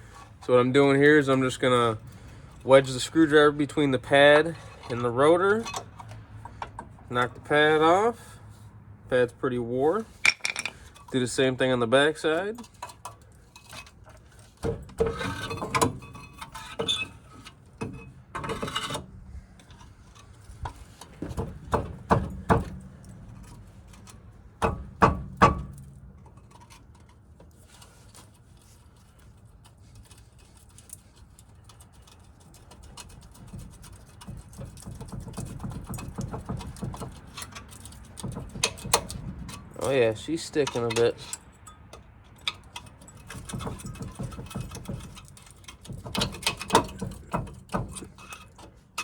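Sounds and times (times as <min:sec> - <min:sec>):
screwdriver clinking on brake metal: 0:01.2 - 0:07.5, 0:10.2 - 0:11.4, 0:29.6 - 0:49.0
sharp metal knocks: 0:10.2 - 0:10.8, 0:24.6 - 0:26.0.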